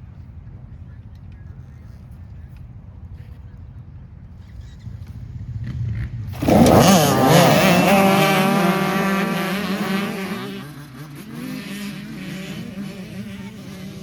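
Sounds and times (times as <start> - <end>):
race car engine at full throttle: 5.0 - 14.0.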